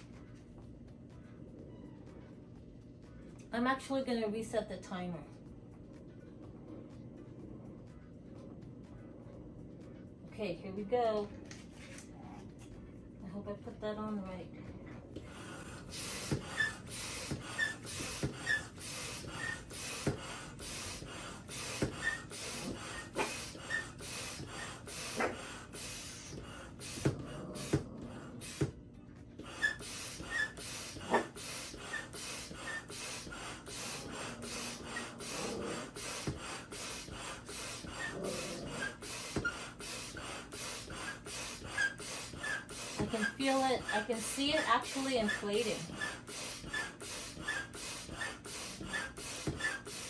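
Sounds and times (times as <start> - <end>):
hand pump hissing air: 15.4 - 27.8, 28.4 - 28.8, 29.4 - 50.0.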